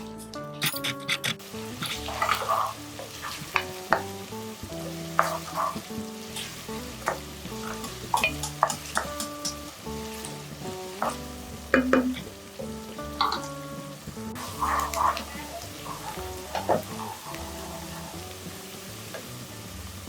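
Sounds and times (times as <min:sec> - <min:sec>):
background music: 0:00.0 - 0:20.0
food sizzling in a pan: 0:01.4 - 0:20.0
spoon scraping a pan: 0:01.6 - 0:04.1, 0:04.7 - 0:12.4, 0:13.2 - 0:13.8, 0:14.4 - 0:18.3.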